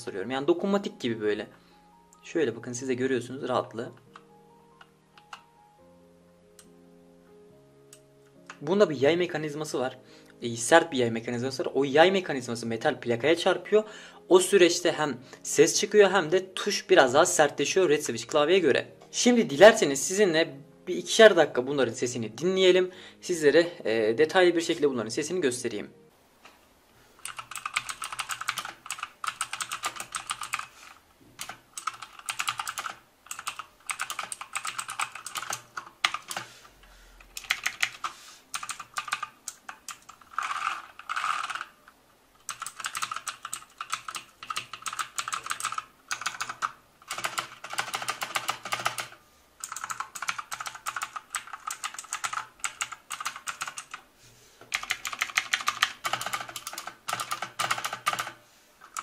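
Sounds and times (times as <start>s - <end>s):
clicky mechanical keyboard typing: 3.9s - 5.5s, 27.2s - 30.7s, 31.4s - 36.5s, 37.2s - 41.8s, 42.4s - 54.0s, 54.7s - 59.0s.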